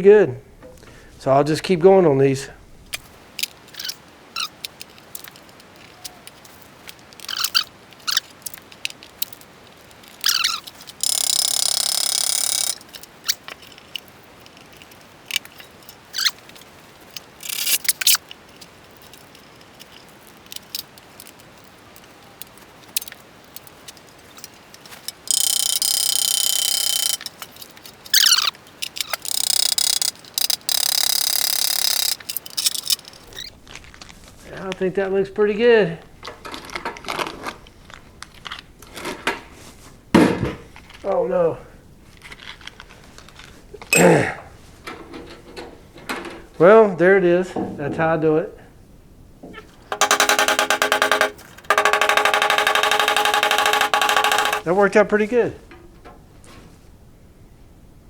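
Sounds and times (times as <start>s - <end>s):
hammer tapping rivets: 10.1s - 14.1s, 17.2s - 19.3s, 20.4s - 33.5s, 49.4s - 54.7s.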